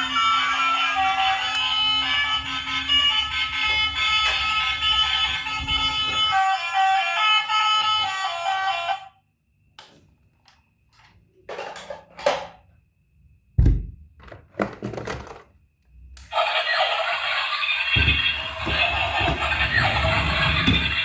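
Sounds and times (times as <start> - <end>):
electronic toy sound: 0.0 - 9.1, 16.3 - 21.0
plastic toys knocking and clattering: 10.9 - 12.7, 13.6 - 15.6, 17.9 - 21.0.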